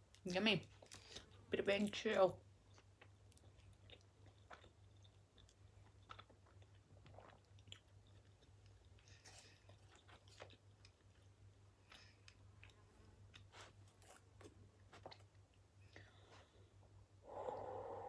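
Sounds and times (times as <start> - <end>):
low steady hum: 0.0 - 18.0
chewing close to microphone: 2.7 - 15.6.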